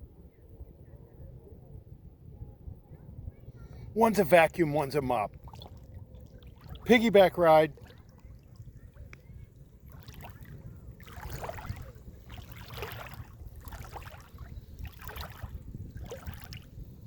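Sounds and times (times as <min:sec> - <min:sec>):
seawater sloshing and splashing: 0:04.8 - 0:17.0.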